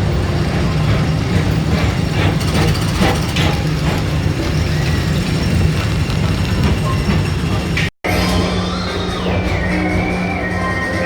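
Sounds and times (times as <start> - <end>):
ride car humming along track: 0.0 - 11.0.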